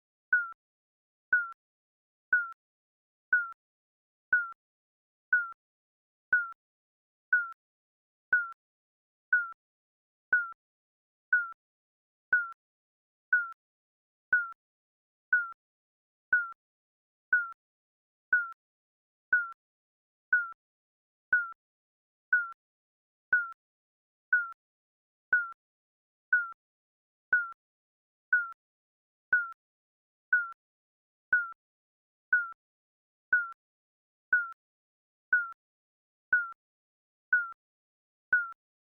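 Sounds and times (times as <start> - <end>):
countdown timer short beeps: 0.3 - 0.6, 1.3 - 1.6, 2.3 - 2.6, 3.3 - 3.6, 4.3 - 4.6, 5.3 - 5.6, 6.3 - 6.6, 7.3 - 7.6, 8.3 - 8.6, 9.3 - 9.6, 10.3 - 10.6, 11.3 - 11.6, 12.3 - 12.6, 13.3 - 13.6, 14.3 - 14.6, 15.3 - 15.6, 16.3 - 16.6, 17.3 - 17.6, 18.3 - 18.6, 19.3 - 19.6, 20.3 - 20.6, 21.3 - 21.6, 22.3 - 22.6, 23.3 - 23.6, 24.3 - 24.6, 25.3 - 25.6, 26.3 - 26.6, 27.3 - 27.6, 28.3 - 28.6, 29.3 - 29.6, 30.3 - 30.6, 31.3 - 31.6, 32.3 - 32.6, 33.3 - 33.6, 34.3 - 34.6, 35.3 - 35.6, 36.3 - 36.6, 37.3 - 37.6, 38.3 - 38.6.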